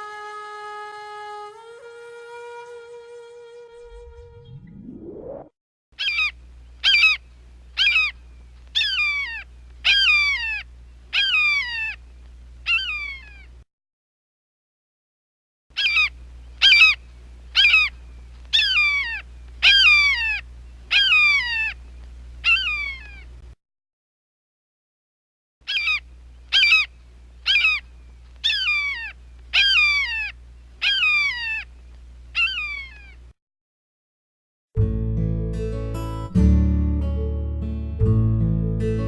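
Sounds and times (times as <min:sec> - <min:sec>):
low hum: 0:03.7 - 0:05.5
hawk screeching: 0:18.5 - 0:21.8, 0:28.4 - 0:31.7.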